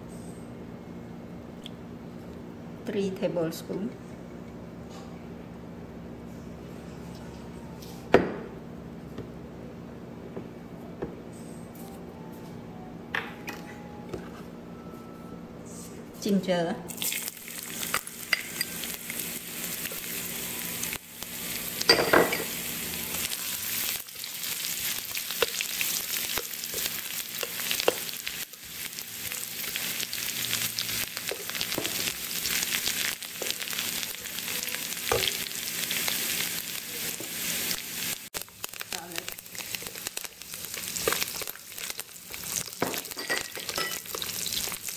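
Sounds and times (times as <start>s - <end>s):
ginger sizzling in oil: 16.9s - 44.9s.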